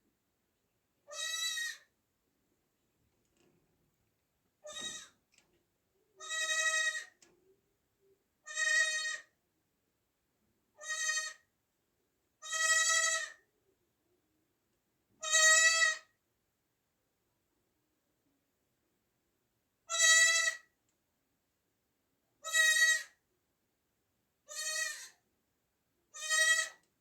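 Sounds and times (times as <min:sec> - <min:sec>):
goat kid bleating: 0:01.1 - 0:01.9, 0:04.6 - 0:05.2, 0:06.2 - 0:07.2, 0:08.4 - 0:09.4, 0:10.8 - 0:11.5, 0:12.4 - 0:13.5, 0:15.2 - 0:16.2, 0:19.9 - 0:20.8, 0:22.4 - 0:23.2, 0:24.5 - 0:25.2, 0:26.1 - 0:26.9.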